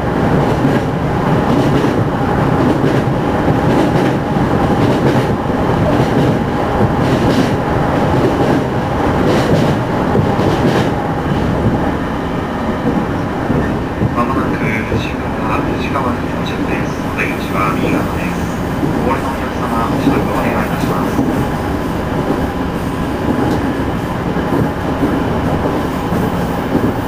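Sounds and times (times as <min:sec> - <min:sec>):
train car running rumble: 0:00.0 - 0:27.0
clacks from rails: 0:01.5 - 0:11.8.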